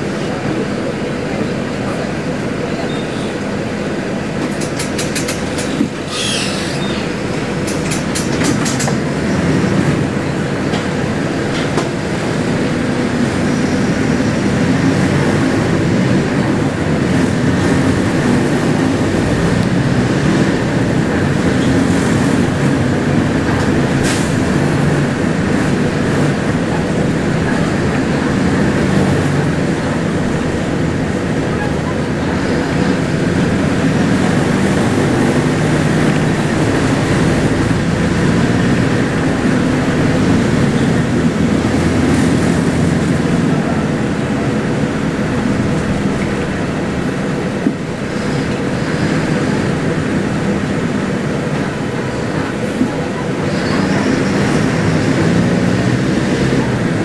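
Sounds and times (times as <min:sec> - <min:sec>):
bus diesel engine droning: 0:00.0 - 0:57.0
clicks and rattles: 0:04.4 - 0:06.0.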